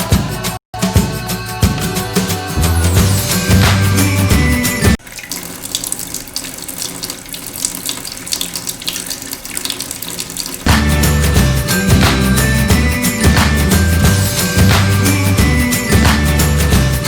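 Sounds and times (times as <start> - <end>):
background music: 0.0 - 5.0, 10.7 - 17.0
water running: 2.5 - 17.0.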